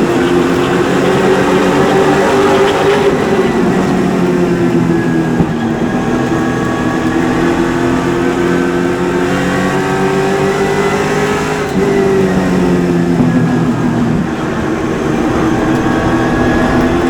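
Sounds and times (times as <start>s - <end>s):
race car engine running hard: 0.0s - 17.0s.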